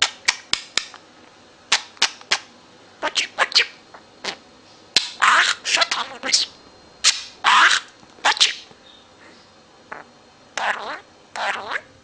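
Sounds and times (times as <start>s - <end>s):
bird noisy call: 3.0s - 4.4s, 5.0s - 12.0s.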